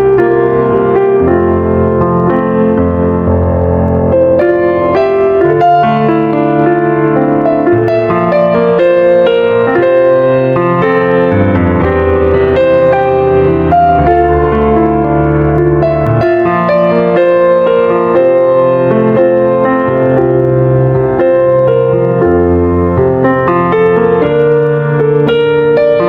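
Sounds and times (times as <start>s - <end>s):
slow piano music: 0.0s - 26.0s.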